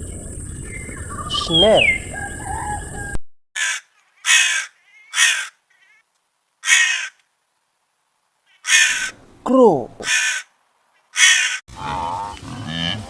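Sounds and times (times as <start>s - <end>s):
crow cawing: 3.6s - 6.0s, 6.6s - 7.2s, 8.5s - 9.1s, 10.0s - 12.3s.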